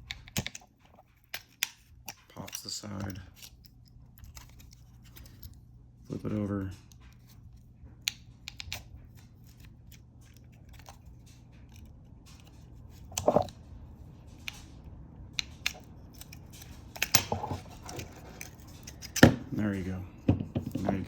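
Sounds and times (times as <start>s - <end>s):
plastic scrape: 13.1s - 13.5s, 17.2s - 19.0s.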